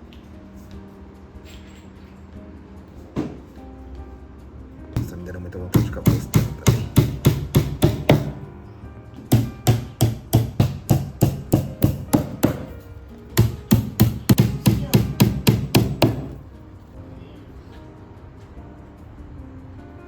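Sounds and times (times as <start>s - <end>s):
hammer striking wood: 5.0s - 8.5s, 9.2s - 12.8s, 13.4s - 16.4s.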